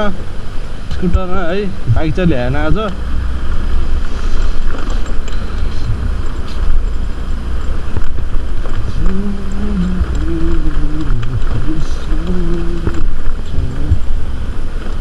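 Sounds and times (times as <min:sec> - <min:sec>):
scooter engine rumble: 0:00.0 - 0:15.0
tyres on rough road: 0:00.0 - 0:15.0
wind buffeting microphone: 0:00.0 - 0:15.0
person singing long notes: 0:08.8 - 0:14.0.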